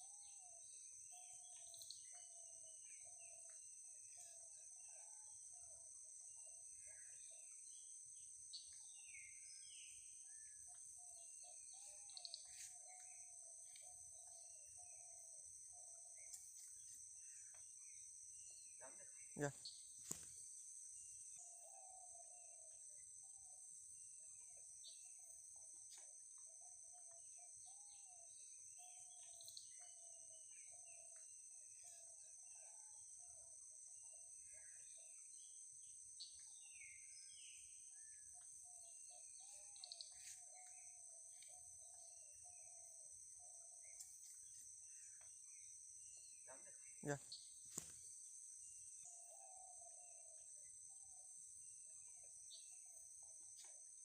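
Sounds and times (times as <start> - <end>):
bird chirps: 0.0 - 5.8, 6.5 - 20.5, 24.8 - 33.4, 34.4 - 48.2
high-pitched insect drone: 34.4 - 54.0.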